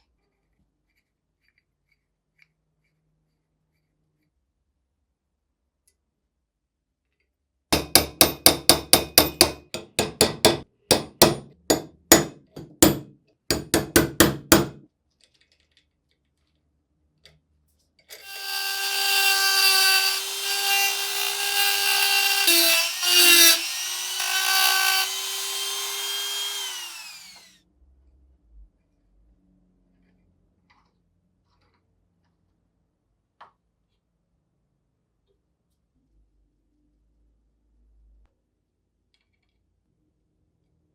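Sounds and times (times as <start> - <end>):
hand tool sharp strokes: 18.2 - 27.5
small electric power tool running: 18.2 - 27.5.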